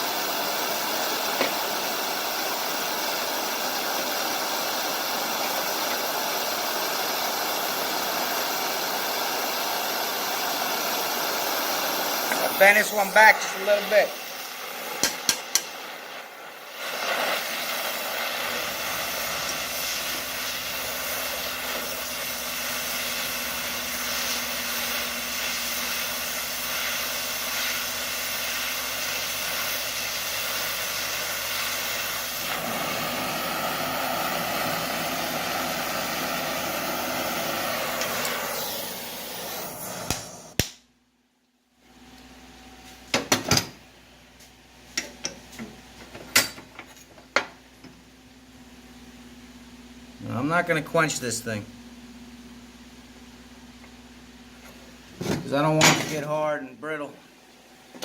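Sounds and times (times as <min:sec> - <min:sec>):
torch flame hissing: 0:00.0 - 0:40.7
torch clicks: 0:00.8 - 0:01.8, 0:12.1 - 0:23.4, 0:37.4 - 0:40.8.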